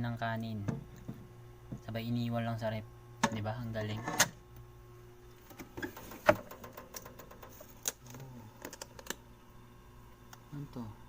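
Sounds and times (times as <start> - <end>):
food containers clicking and knocking: 5.6 - 9.2.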